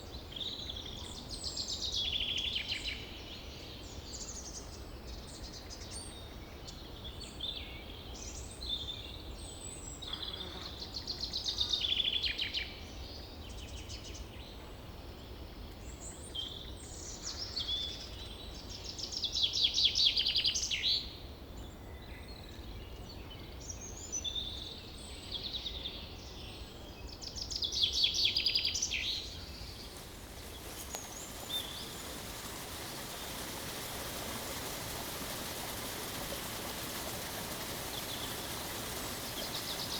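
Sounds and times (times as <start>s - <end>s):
birds calling and singing: 27.8s - 39.9s
rapid trilled birdsong: 27.8s - 39.9s
low background rush: 29.4s - 39.9s
waterfall running water: 29.5s - 39.9s.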